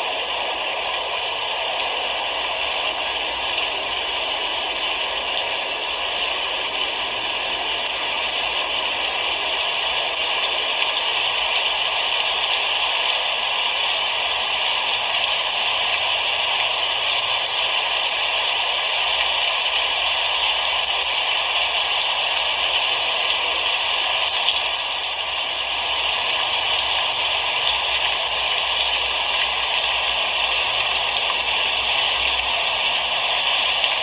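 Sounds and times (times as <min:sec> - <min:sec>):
steady rain falling: 0:00.0 - 0:34.0.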